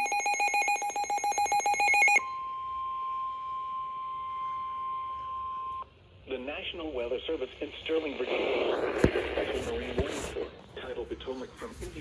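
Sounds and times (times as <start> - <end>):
rapidly pulsing electronic ringing: 0.0 - 2.3
steady warning alarm tone: 0.0 - 5.8.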